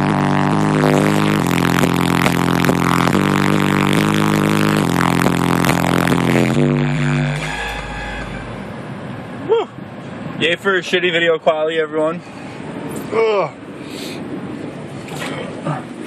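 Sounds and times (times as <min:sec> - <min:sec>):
deep low bass note: 0:00.0 - 0:08.7
bass-heavy music from car speakers: 0:00.0 - 0:08.8.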